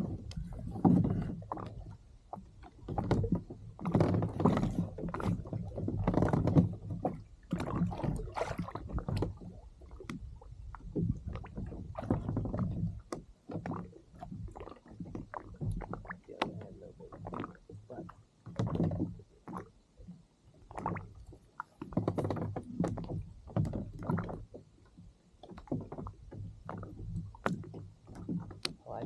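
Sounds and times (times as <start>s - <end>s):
water sloshing against kayak hull: 0.0s - 29.0s
small knocks and clicks: 27.4s - 28.8s.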